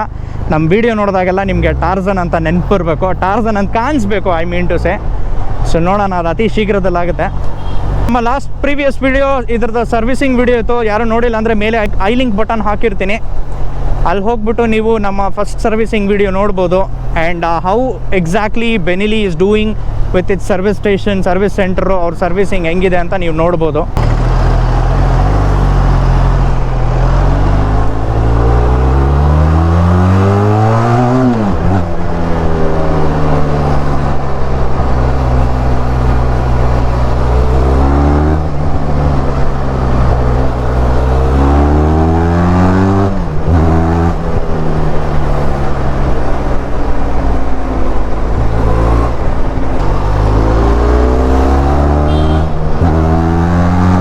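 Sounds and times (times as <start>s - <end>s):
motorcycle engine revving: 24.0s - 54.0s.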